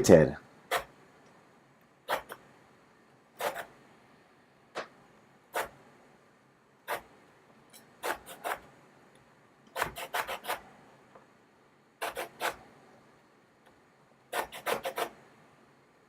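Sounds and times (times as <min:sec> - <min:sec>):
orange peel rasping on grater: 0:09.8 - 0:10.6, 0:12.0 - 0:12.6, 0:14.4 - 0:15.2.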